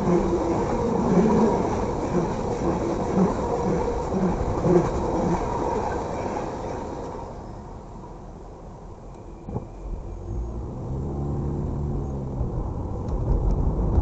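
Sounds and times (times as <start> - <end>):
train cars rumbling past: 0.0 - 8.3.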